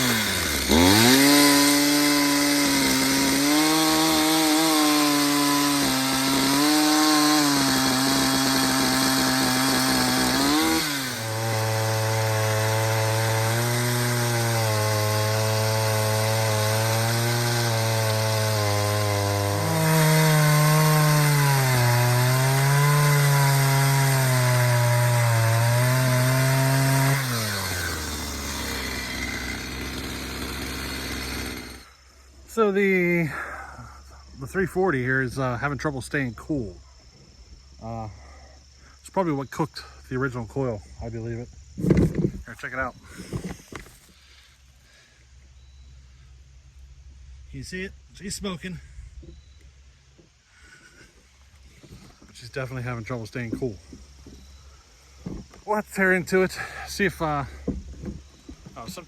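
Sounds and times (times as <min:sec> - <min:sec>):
chainsaw cutting wood: 0:00.0 - 0:32.0, 0:41.7 - 0:45.0.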